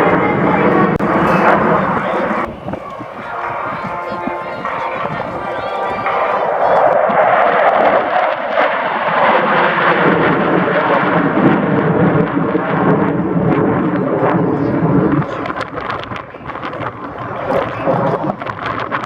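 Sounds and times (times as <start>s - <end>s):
jet passing by: 0.0s - 17.7s.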